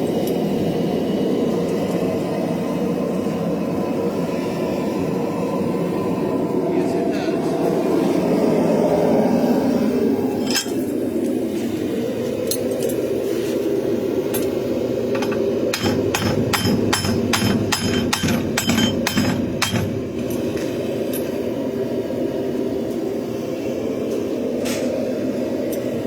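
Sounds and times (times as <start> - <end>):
forge running: 15.0 - 21.9
hammer ringing on steel: 15.7 - 20.1.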